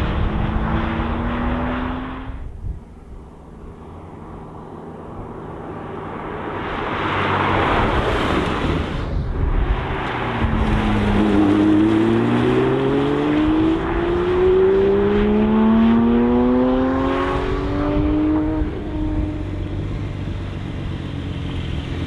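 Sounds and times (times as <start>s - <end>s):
sports car engine accelerating: 0.0s - 2.6s, 9.7s - 22.0s.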